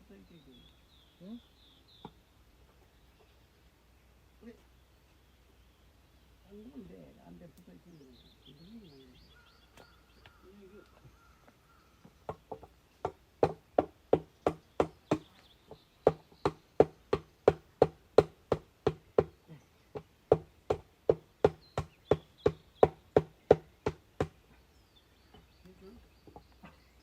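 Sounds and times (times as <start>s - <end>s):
tool knocking on wood: 12.3s - 19.3s, 20.0s - 24.4s.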